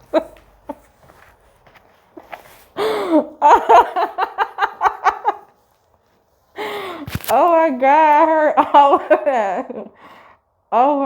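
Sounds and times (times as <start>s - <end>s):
person gasping loudly: 2.8s - 3.4s, 6.6s - 7.2s.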